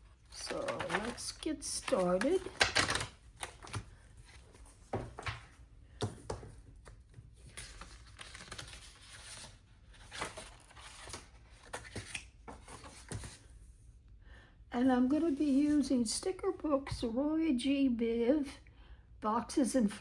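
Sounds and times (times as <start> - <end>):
paper rustling: 0.1 - 13.6.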